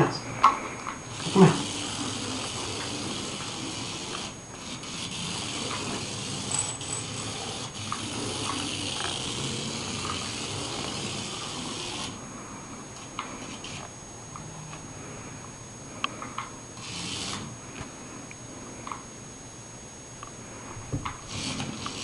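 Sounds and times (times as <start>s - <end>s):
toy motor whirring: 1.0s - 12.2s, 13.0s - 13.9s, 16.4s - 17.6s, 21.0s - 22.0s.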